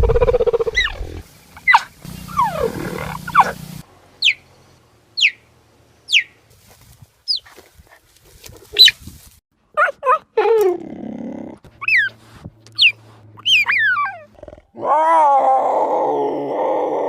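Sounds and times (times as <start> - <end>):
falling yowls: 1.7 - 3.5, 12.8 - 17.0.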